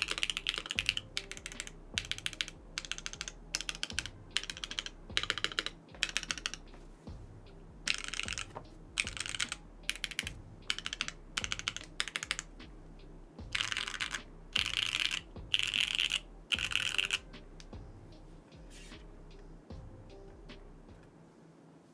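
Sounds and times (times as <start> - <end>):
mechanical keyboard typing: 0.0 - 6.6, 7.9 - 12.5, 13.5 - 17.3.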